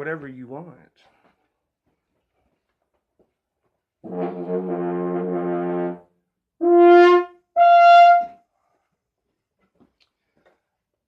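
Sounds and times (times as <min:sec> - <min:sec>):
trumpet notes: 0:04.0 - 0:08.4.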